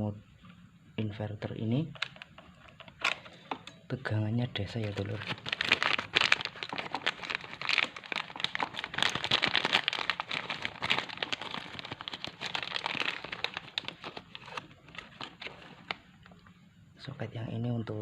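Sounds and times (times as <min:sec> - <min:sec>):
plastic parts crinkling and clicking: 0:01.9 - 0:03.8, 0:04.7 - 0:16.5.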